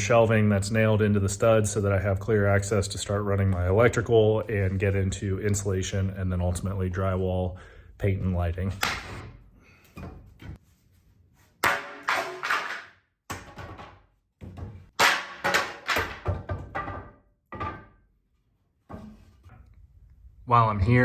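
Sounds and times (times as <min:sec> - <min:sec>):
hammer knocking wooden boards: 0:11.6 - 0:18.0.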